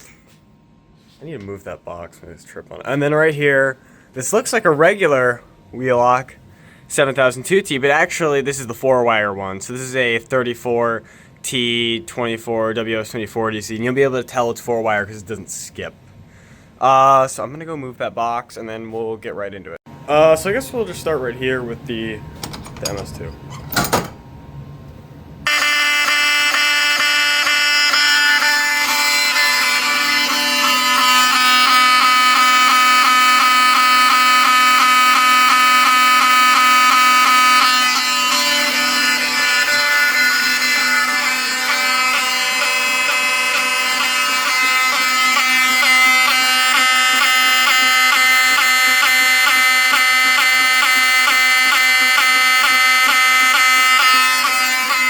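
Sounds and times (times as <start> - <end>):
fire alarm horns buzzing: 25.4 - 55.0.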